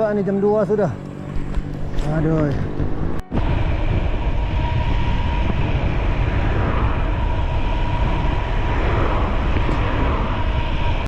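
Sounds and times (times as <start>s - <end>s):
wind buffeting microphone: 1.3s - 11.0s.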